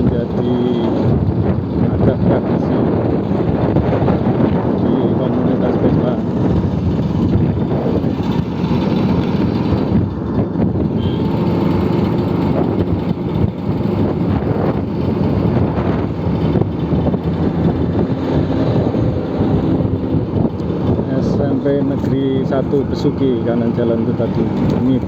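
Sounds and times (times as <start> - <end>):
road and wind rush: 0.0 - 25.0
scooter engine running: 0.0 - 25.0.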